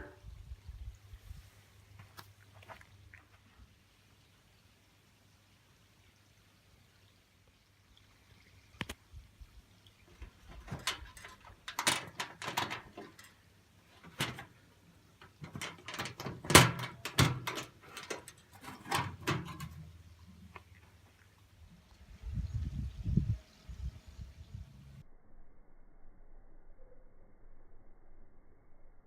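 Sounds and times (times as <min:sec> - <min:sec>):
objects knocking and clattering: 0:10.2 - 0:13.4, 0:14.0 - 0:14.6, 0:15.2 - 0:20.0.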